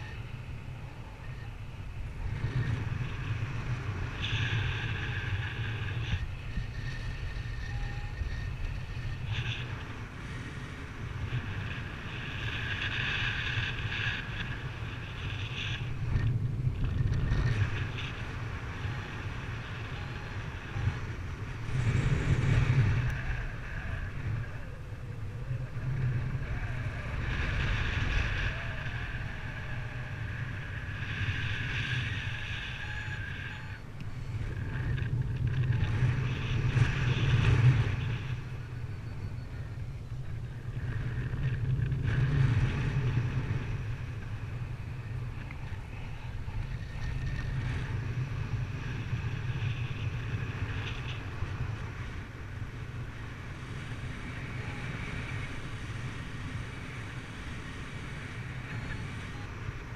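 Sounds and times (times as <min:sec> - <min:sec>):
wind buffeting microphone: 0:00.0 - 0:59.9
high whistling tone: 0:05.4 - 0:09.2, 0:32.0 - 0:34.2, 0:38.4 - 0:40.3.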